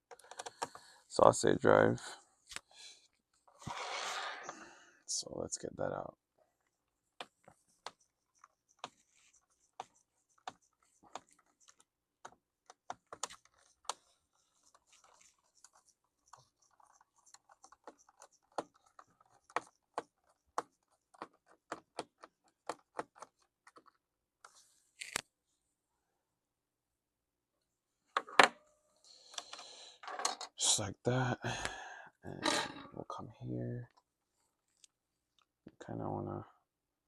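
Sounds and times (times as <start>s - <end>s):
laptop parts clicking and scraping: 0.1s - 0.8s, 12.6s - 25.2s.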